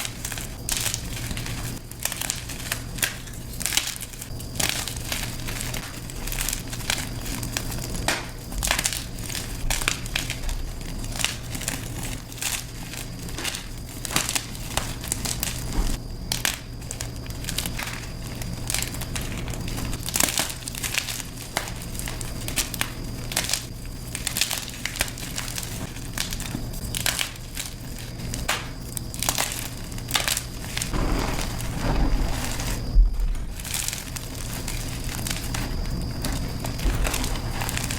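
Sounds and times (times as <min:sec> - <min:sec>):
chalk blocks crunching and crackling: 0:30.2 - 0:37.9.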